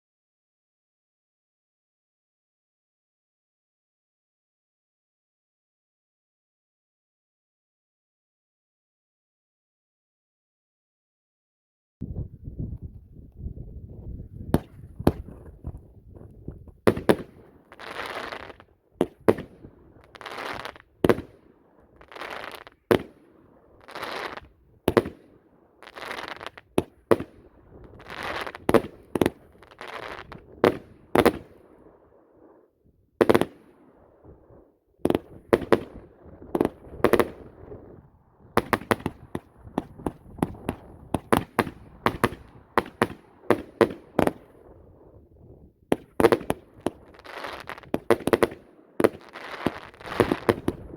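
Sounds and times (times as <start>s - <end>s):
firework bangs: 14.5s - 31.6s, 35.0s - 44.8s, 45.9s - 50.9s.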